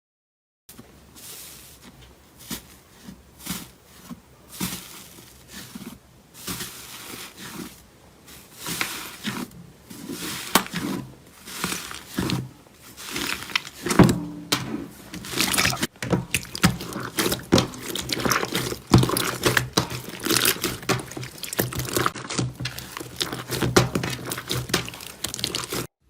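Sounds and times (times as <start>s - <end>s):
slime squelching: 1.2s - 26.0s.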